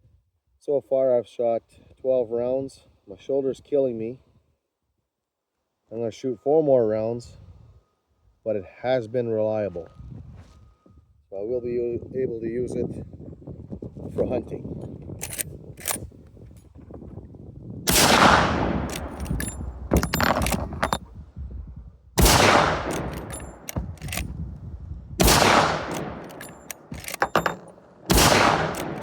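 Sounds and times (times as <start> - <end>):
rifle lever action clicks: 15.2 - 16.0, 18.8 - 21.0, 22.5 - 24.3, 25.2 - 29.0
rifle shots ringing out: 17.9 - 21.0, 22.2 - 24.3, 25.2 - 29.0.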